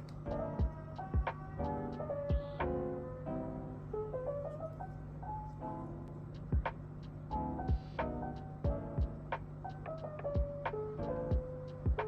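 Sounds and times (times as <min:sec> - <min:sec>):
electronic music with kick drum: 0:00.6 - 0:01.4, 0:07.7 - 0:09.4, 0:10.4 - 0:10.7, 0:11.3 - 0:12.0.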